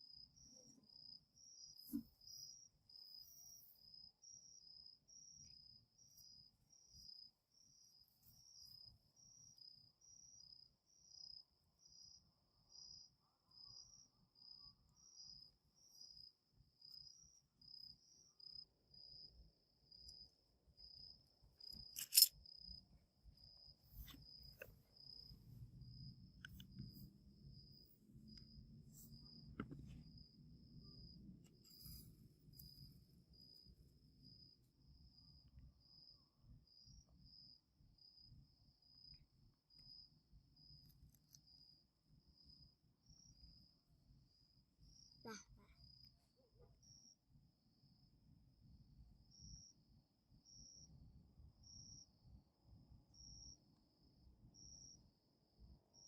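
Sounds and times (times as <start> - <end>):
crickets chirping: 0.0 - 56.0
sharp click: 21.8 - 22.3.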